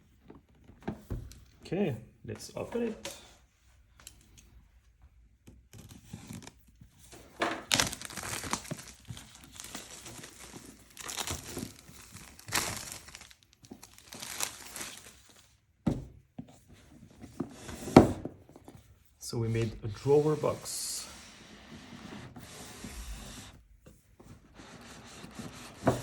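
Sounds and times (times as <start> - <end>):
packaging tearing and crinkling: 7.6 - 15.5.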